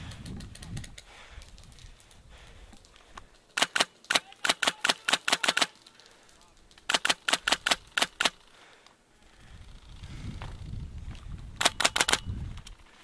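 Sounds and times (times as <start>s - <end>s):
airsoft gun firing: 11.6s - 12.3s.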